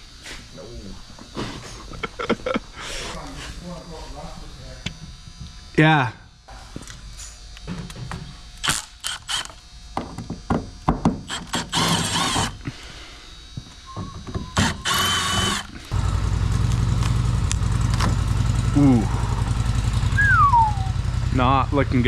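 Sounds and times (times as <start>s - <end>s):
motor running with low pulse: 0.0s - 22.0s
power ratchet whirring: 8.5s - 9.9s, 11.2s - 12.8s, 13.4s - 20.2s.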